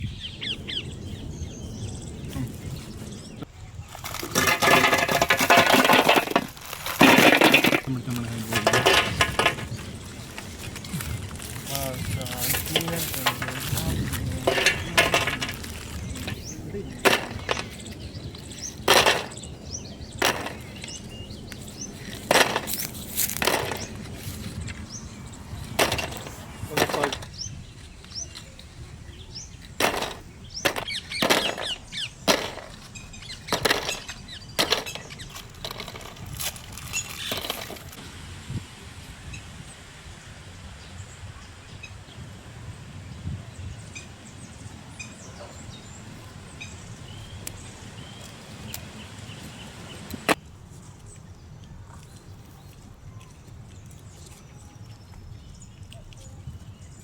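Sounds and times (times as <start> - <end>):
dry biscuits snapping: 6.4 - 16.4, 20.2 - 24.6, 29.7 - 38.0.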